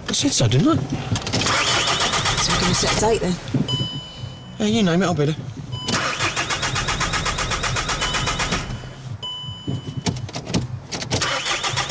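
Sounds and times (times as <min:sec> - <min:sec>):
car starter motor cranking: 0:01.1 - 0:04.1, 0:05.8 - 0:09.0, 0:10.1 - 0:11.9.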